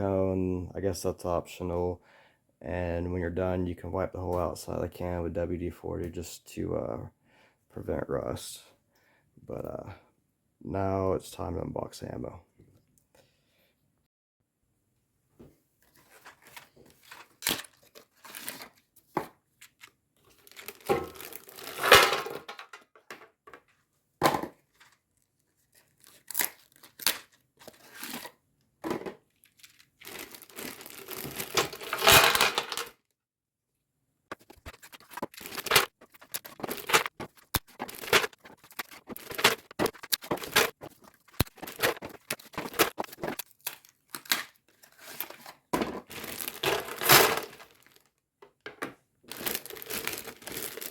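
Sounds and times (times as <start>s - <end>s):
cardboard boxes tearing: 34.7s - 43.6s, 49.3s - 50.9s.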